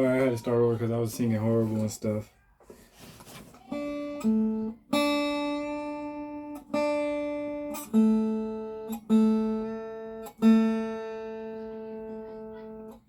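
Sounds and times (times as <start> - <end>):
acoustic guitar chords strummed: 3.7 - 13.0.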